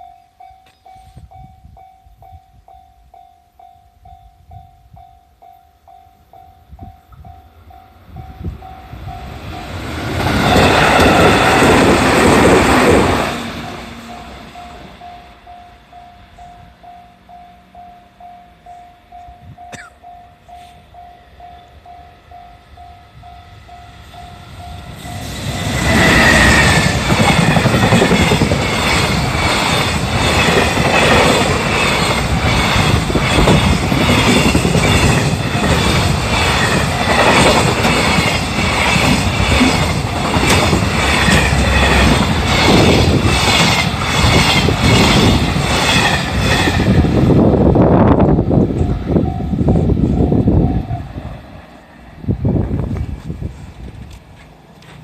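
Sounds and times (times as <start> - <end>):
level crossing warning bell: 0.0 - 10.0, 13.6 - 25.4
freight train rumbling past: 0.0 - 55.0.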